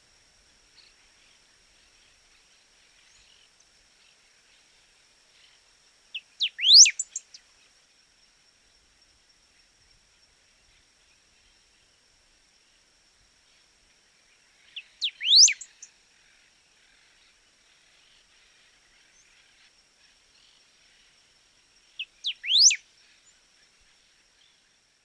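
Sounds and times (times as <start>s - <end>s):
bird whistling song: 6.4s - 7.2s, 15.0s - 15.8s, 22.0s - 22.8s.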